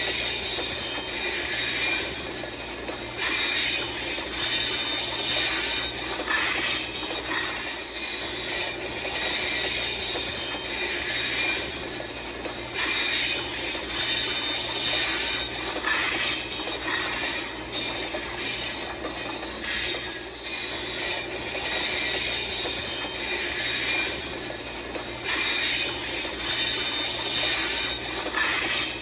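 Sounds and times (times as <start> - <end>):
train rumbling on track: 0.0 - 29.0.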